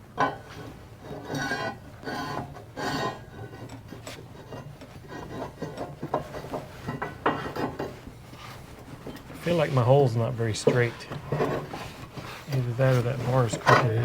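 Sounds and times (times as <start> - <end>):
metal tube scraping through hole: 0.5 - 8.7.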